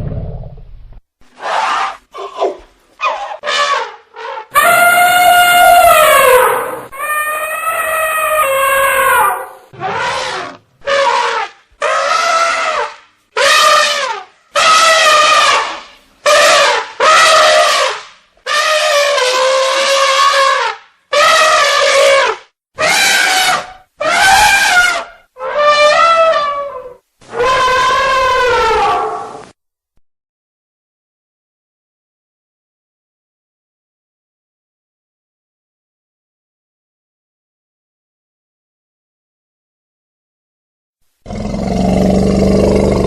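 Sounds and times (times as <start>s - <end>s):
elephant trumpeting: 1.4s - 29.4s.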